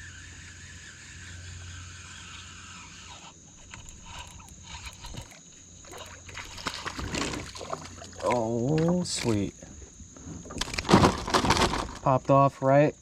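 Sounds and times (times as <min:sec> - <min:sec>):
steady low hum: 0:00.0 - 0:13.0
water splashing: 0:03.9 - 0:09.6.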